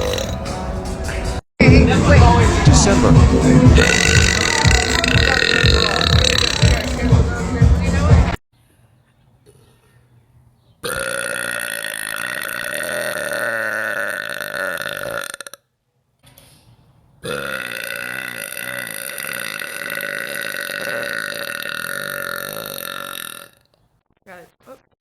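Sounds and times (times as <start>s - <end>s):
woman burping: 0.0s - 0.5s, 3.8s - 7.1s, 10.8s - 15.6s, 17.2s - 23.7s.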